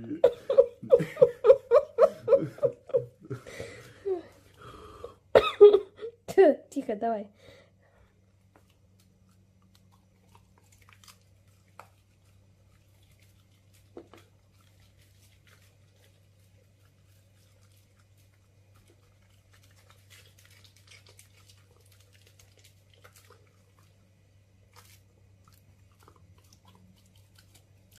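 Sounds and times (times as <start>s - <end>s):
dog chewing and crunching food: 8.3s - 28.0s.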